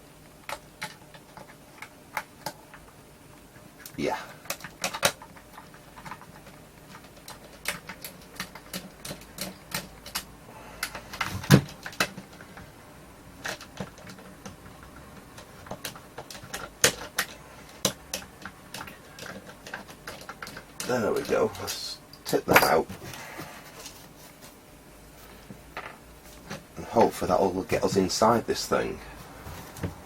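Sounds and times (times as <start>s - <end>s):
screwdriver clicks and taps: 15.4s - 21.3s.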